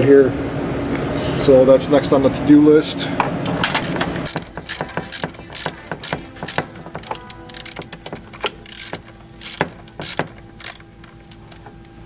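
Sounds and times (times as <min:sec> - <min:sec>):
socket ratchet clicking: 0:03.8 - 0:10.9.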